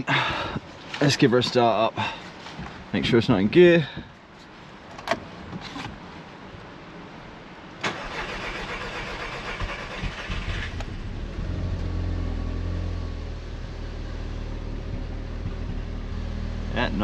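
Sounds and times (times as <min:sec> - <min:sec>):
car engine idling: 0:07.9 - 0:17.0.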